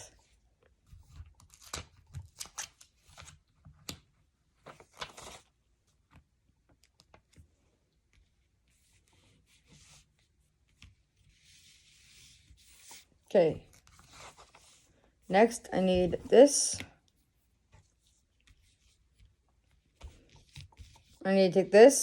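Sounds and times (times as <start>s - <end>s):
soft rustling: 7.4s - 21.3s.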